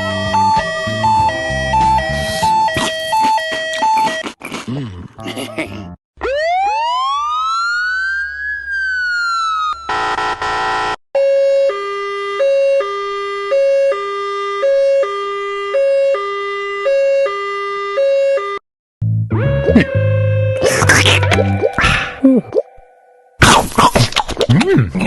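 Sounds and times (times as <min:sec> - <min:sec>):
rising and falling siren wail: 0:00.0 - 0:04.0, 0:06.2 - 0:10.6, 0:11.2 - 0:18.6
two-tone ambulance siren: 0:00.0 - 0:04.2, 0:06.2 - 0:18.6.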